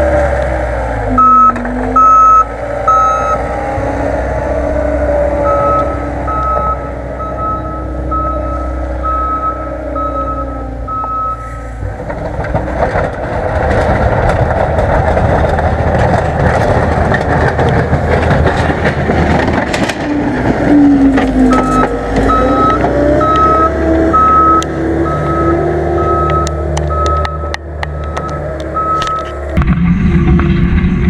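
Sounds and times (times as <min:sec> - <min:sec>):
diesel engine running hard: 0:00.0 - 0:31.0
backup alarm beeping: 0:01.2 - 0:03.4, 0:05.4 - 0:11.7, 0:21.5 - 0:29.4.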